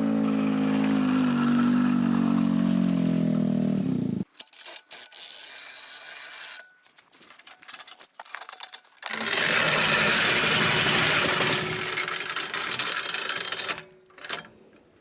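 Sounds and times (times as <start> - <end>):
winch ratchet clicking and rattling: 4.2 - 9.6, 11.8 - 14.5.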